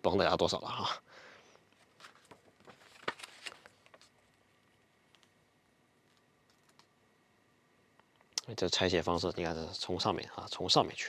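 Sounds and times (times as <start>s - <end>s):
paper pages rustling: 1.7s - 5.3s.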